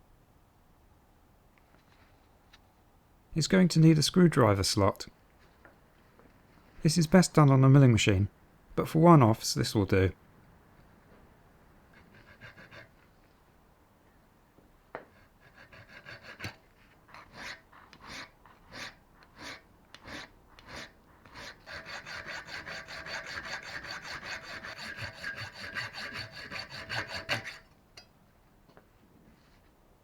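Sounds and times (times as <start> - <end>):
file scraping metal: 15.2 - 27.7.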